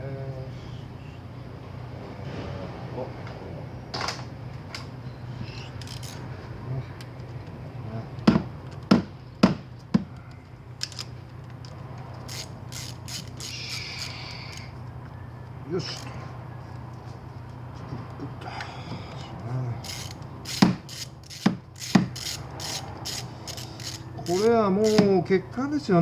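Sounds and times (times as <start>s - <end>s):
steady low hum: 0.0s - 26.0s
ratchet wrench clicking: 5.6s - 6.2s, 10.8s - 14.7s, 19.8s - 25.1s
ratcheting rattle: 5.6s - 6.2s, 10.8s - 14.7s, 19.8s - 25.1s.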